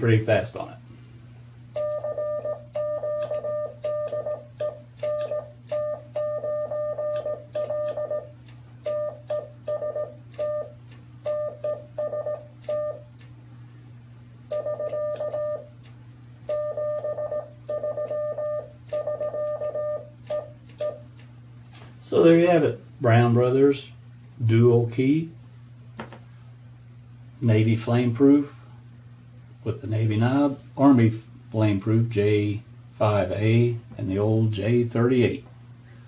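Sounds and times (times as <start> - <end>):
morse code beeping: 1.8 - 13.0, 14.5 - 15.7, 16.5 - 21.0.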